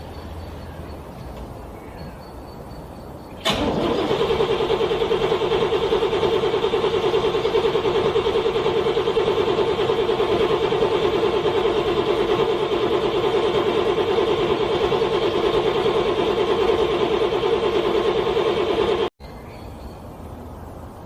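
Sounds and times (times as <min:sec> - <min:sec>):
car engine cranking on starter: 0:03.4 - 0:19.1.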